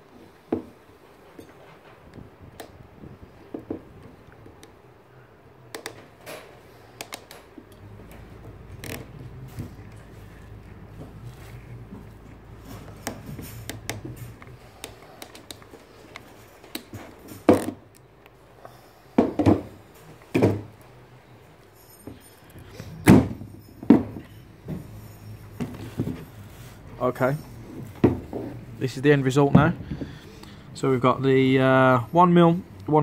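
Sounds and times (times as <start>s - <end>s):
sharp knocks and thunks: 19.2s - 20.7s.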